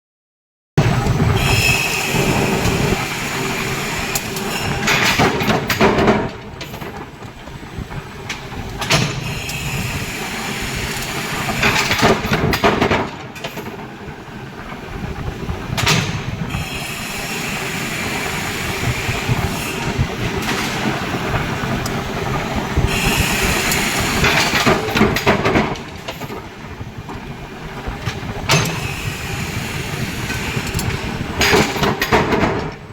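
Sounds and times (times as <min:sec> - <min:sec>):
forging machine running: 0:00.8 - 0:32.9
loud machine stroke with hiss: 0:00.9 - 0:05.8, 0:09.0 - 0:12.6, 0:16.5 - 0:25.3, 0:28.5 - 0:31.9.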